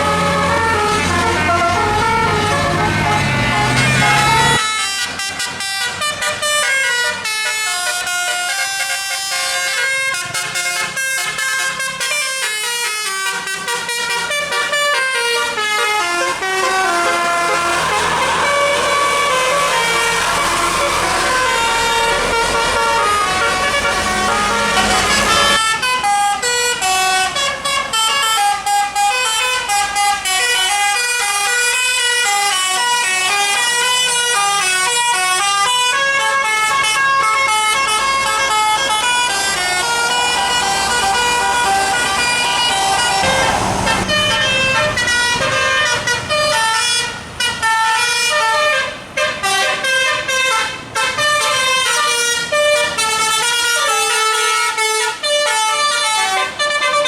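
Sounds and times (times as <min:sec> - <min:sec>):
musical air horn playing tune: 0:00.0 - 0:57.0
rushing noise: 0:15.8 - 0:25.6, 0:35.8 - 0:46.7.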